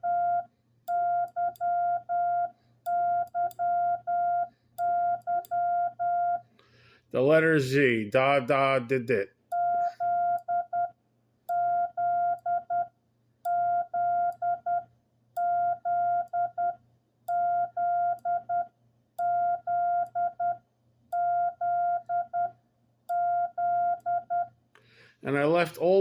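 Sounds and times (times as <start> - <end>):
morse code tone: 0.0 - 6.4, 9.5 - 10.9, 11.5 - 12.9, 13.5 - 14.8, 15.4 - 20.6, 21.2 - 24.5.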